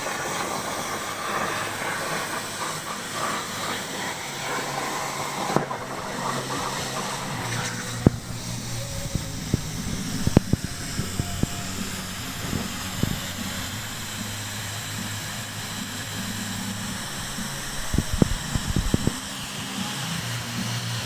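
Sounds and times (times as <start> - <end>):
metal-cutting machine humming: 0.0 - 21.0.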